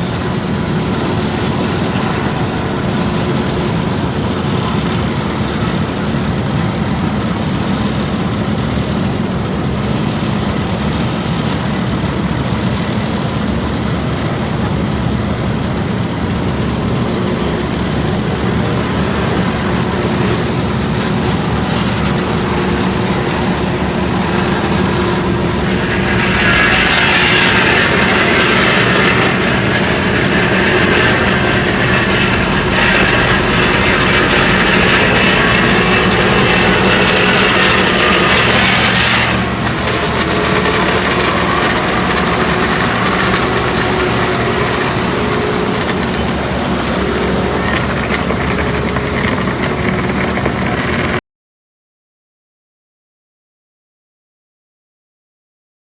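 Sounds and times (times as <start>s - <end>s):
heavy diesel machinery running: 0.0s - 51.2s
metallic rattling and clattering: 17.0s - 50.9s.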